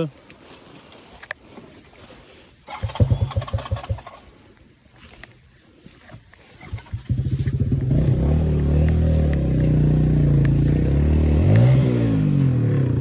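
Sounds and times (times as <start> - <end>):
motorcycle engine revving: 2.7 - 4.1, 6.6 - 13.0.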